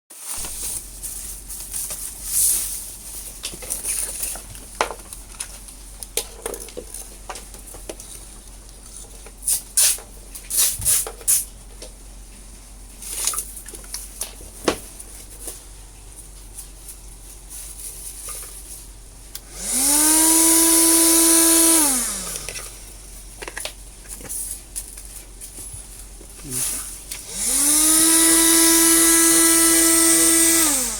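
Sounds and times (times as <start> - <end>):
car vacuum cleaner motor whining: 19.4 - 22.8, 26.4 - 30.9.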